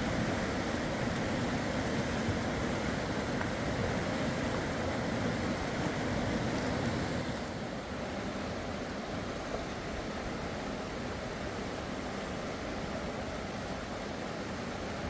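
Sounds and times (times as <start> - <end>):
rushing river water: 0.0 - 15.0.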